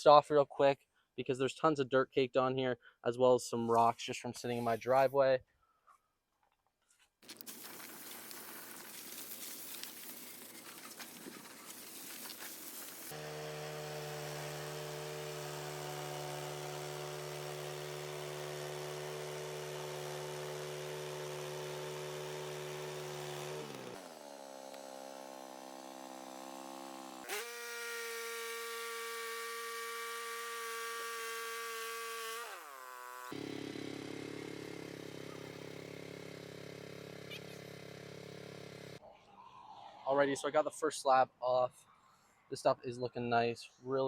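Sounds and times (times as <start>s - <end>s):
sawmill engine running: 7.5s - 39.0s.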